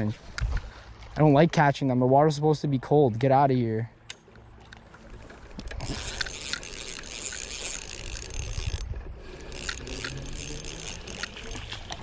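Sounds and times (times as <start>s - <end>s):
fishing reel gears whirring: 5.0s - 12.0s.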